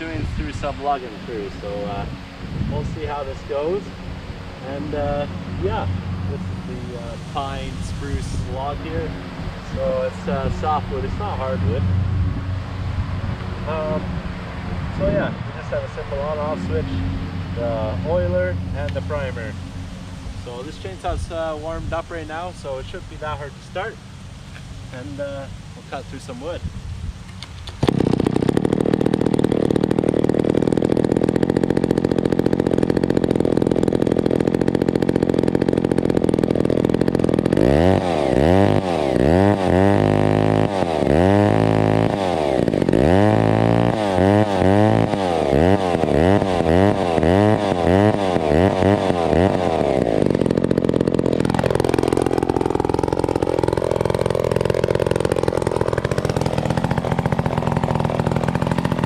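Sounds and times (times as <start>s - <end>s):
chainsaw revving: 0.0s - 11.9s, 27.7s - 59.0s.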